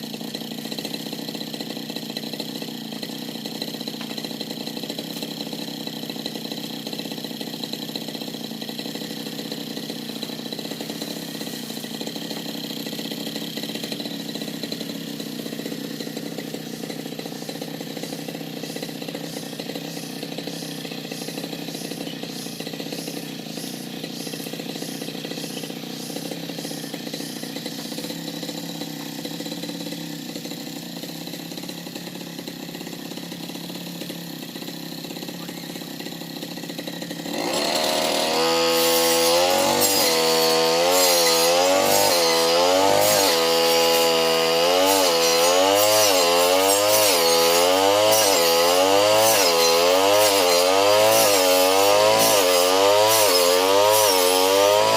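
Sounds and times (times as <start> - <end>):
brush cutter engine running: 0.0 - 54.9.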